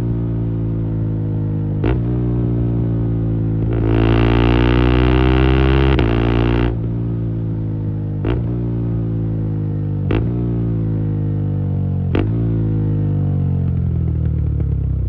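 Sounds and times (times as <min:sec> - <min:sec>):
motorcycle engine revving: 0:01.8 - 0:07.2, 0:10.1 - 0:11.1, 0:12.1 - 0:13.1.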